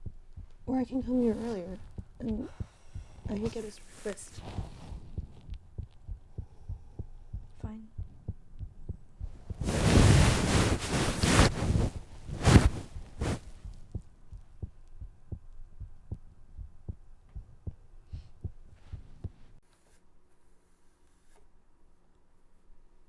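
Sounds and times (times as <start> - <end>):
heartbeat-like thumps: 0.0 - 19.6.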